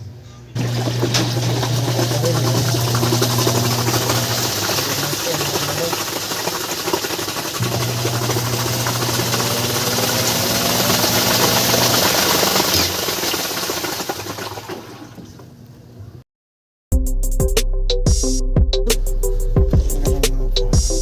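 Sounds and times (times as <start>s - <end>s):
washing machine spinning: 0.6s - 15.6s.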